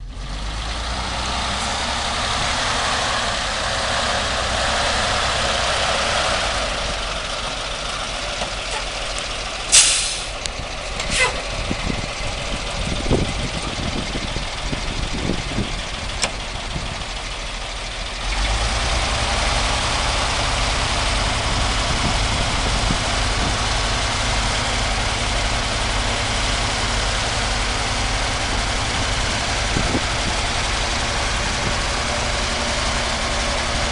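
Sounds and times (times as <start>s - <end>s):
truck engine idling: 0.0s - 33.9s
short sharp hiss: 9.7s - 10.4s.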